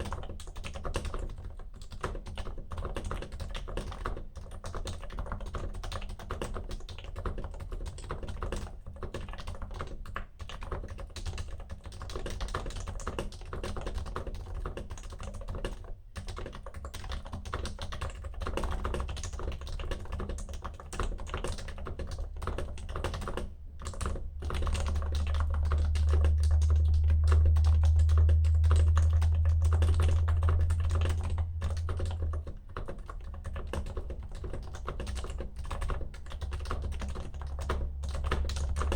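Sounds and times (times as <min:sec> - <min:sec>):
fast keyboard typing: 0:00.0 - 0:38.9
loud low rumble: 0:22.4 - 0:38.9.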